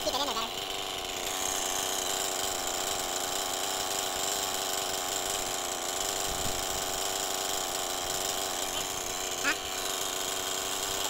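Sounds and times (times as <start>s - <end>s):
chainsaw engine idling: 0.0s - 11.0s.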